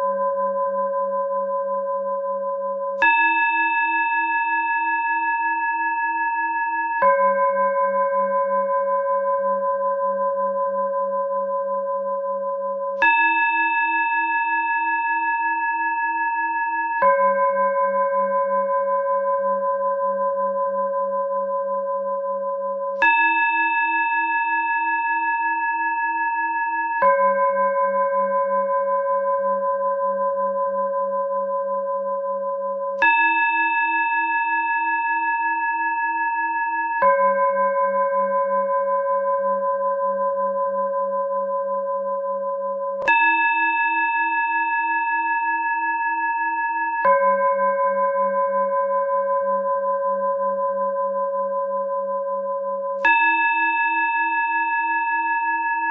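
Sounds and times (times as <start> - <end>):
high singing bowl ringing: 0.0 - 55.9.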